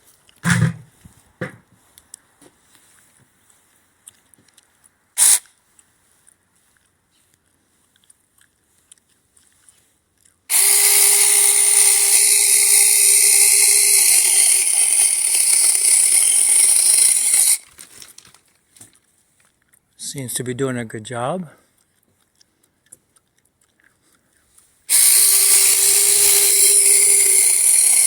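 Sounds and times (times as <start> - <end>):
mini chainsaw cutting branch: 10.5 - 18.3, 24.9 - 28.0.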